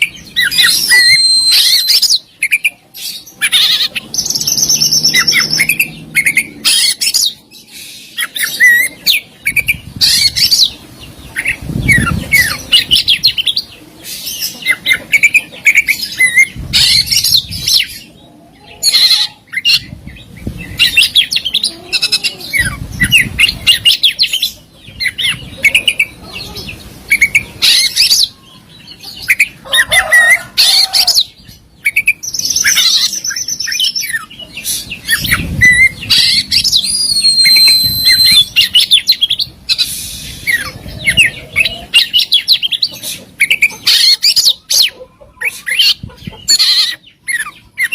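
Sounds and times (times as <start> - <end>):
bird singing chirps and whistles: 0.0 - 7.4, 31.8 - 42.7.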